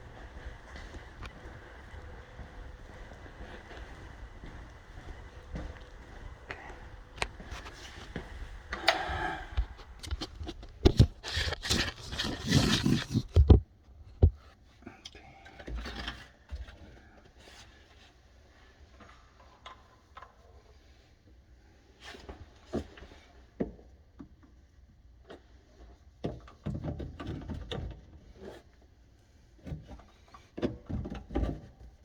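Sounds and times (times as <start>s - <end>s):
cutting tool scraping pipe: 9.8s - 13.6s.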